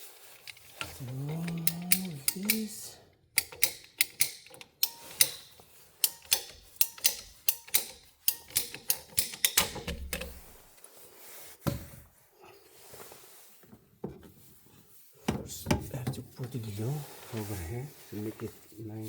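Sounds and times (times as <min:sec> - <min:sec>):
ratcheting pipe cutter clicking: 0:00.4 - 0:10.4.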